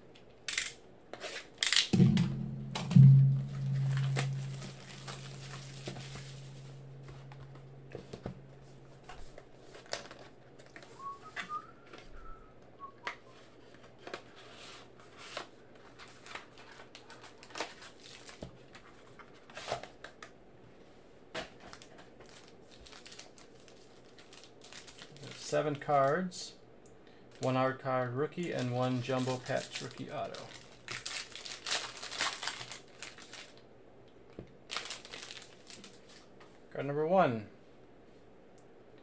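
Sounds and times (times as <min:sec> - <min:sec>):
low held music note: 0:02.0 - 0:09.0
plastic and cardboard crinkling: 0:03.5 - 0:11.8, 0:15.1 - 0:20.1, 0:21.4 - 0:26.2, 0:28.4 - 0:33.6, 0:34.7 - 0:36.3.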